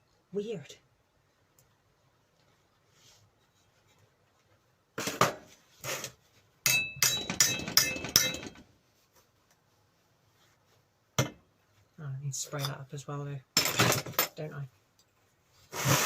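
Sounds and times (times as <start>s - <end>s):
metal knocks: 6.7s - 8.6s
ringing metal strikes: 6.7s - 8.6s.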